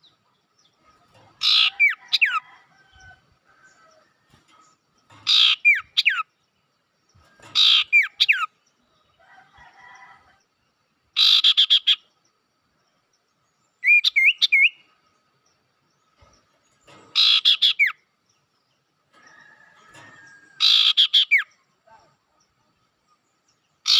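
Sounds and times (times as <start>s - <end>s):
buzzy bird trill with whistled slurs: 11.2s - 12.0s, 20.2s - 22.0s.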